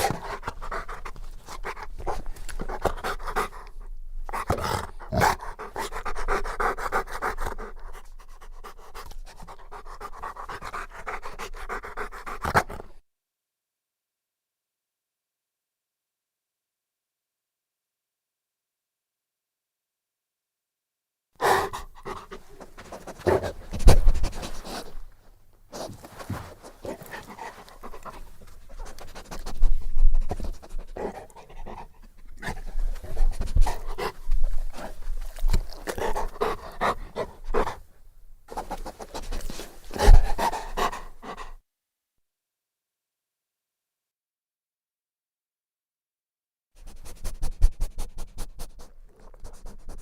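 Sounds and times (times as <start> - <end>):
dog panting: 0.0 - 13.0, 21.4 - 25.1, 25.8 - 37.9, 38.5 - 41.6.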